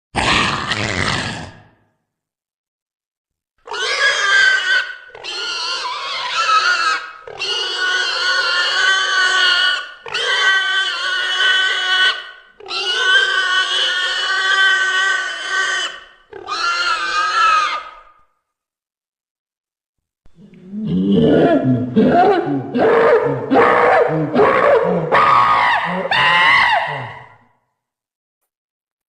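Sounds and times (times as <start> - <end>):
creature calls: 0.2 - 1.8, 20.4 - 27.5.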